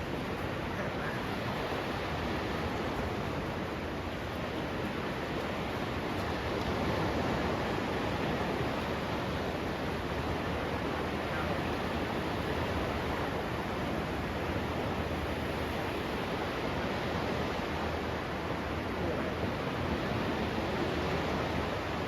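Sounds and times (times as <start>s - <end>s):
sea surf rushing: 0.0s - 22.0s.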